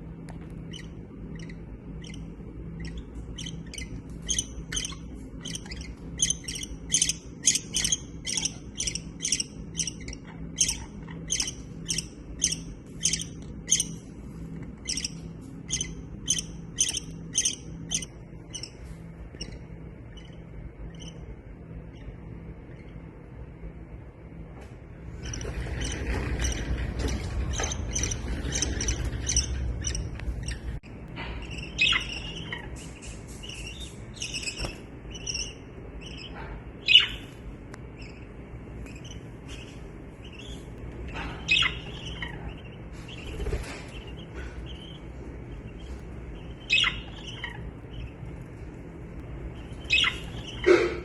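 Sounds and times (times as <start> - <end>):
low rumbling noise: 0.0 - 51.0
budgerigars chirping: 0.5 - 23.1, 25.2 - 30.8, 31.4 - 37.4, 38.0 - 51.0
sharp squawk-like calls: 41.4 - 48.2, 49.5 - 51.0.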